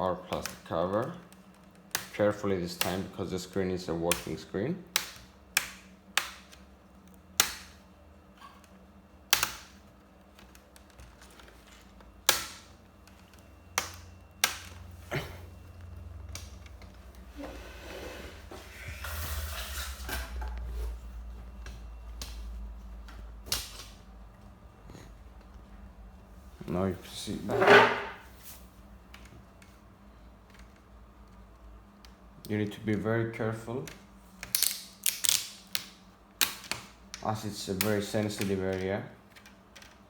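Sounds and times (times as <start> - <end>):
plastic clips snapping: 4.1 - 6.6, 7.4 - 7.8, 9.3 - 9.8, 33.9 - 37.2
plastic rustling and scraping: 16.6 - 21.2.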